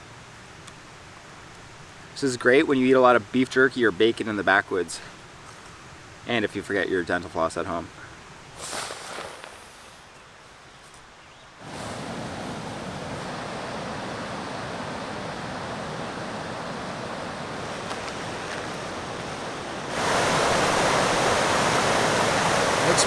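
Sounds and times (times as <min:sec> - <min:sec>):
whitewater rushing over rapids: 0:11.6 - 0:23.0.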